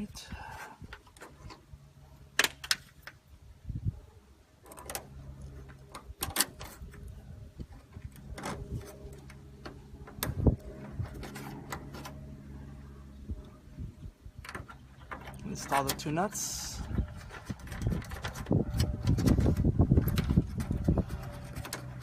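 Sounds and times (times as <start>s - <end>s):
steady low hum: 0.0s - 22.0s
parts clicking and knocking: 4.6s - 12.2s, 14.4s - 22.0s.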